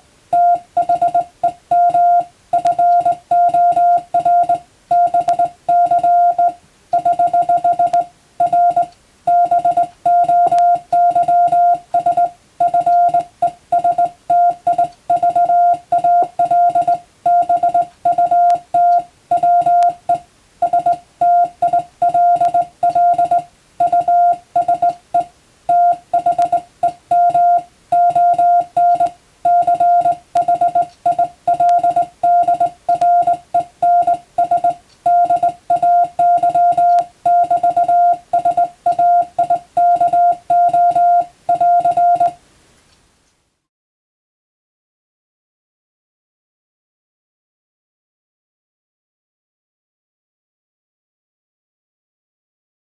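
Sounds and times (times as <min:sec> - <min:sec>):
morse code beeping: 0:00.3 - 0:42.4.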